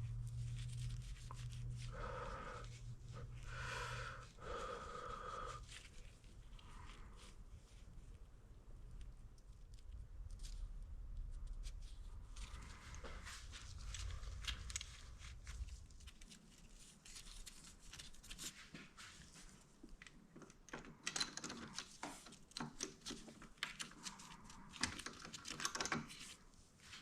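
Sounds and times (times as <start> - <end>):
engine parts and tools clicking: 20.4 - 26.4.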